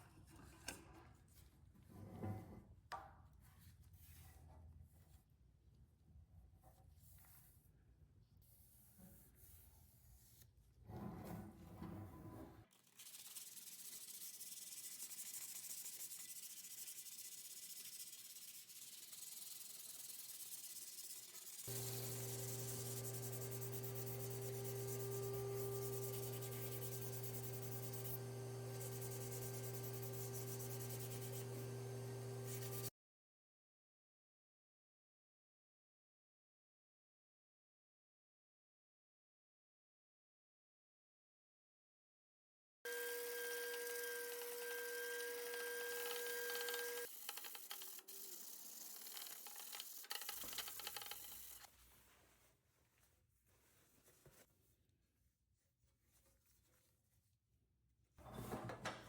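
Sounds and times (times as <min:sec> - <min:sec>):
sanding on metal: 0:12.7 - 0:32.9, 0:43.8 - 0:51.7
electric tool motor hum: 0:21.6 - 0:32.9, 0:42.9 - 0:51.6.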